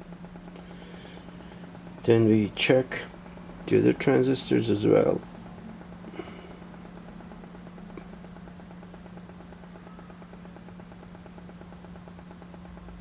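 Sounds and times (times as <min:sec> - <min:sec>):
electrical hum: 0:00.0 - 0:13.0.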